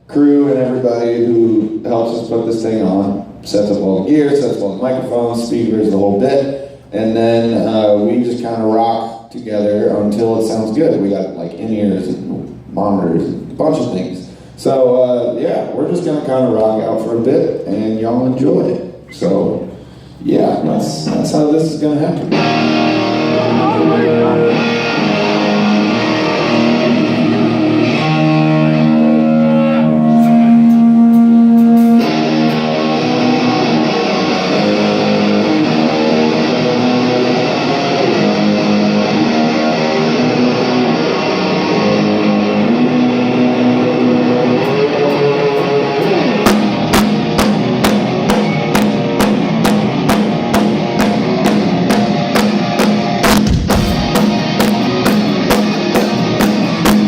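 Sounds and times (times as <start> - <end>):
electric guitar chords: 22.2 - 57.0
drum kit beat: 30.2 - 32.7, 46.0 - 57.0.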